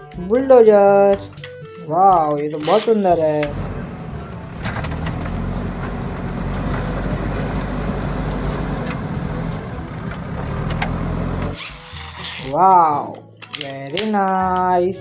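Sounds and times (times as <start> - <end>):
diesel engine running: 2.8 - 11.6.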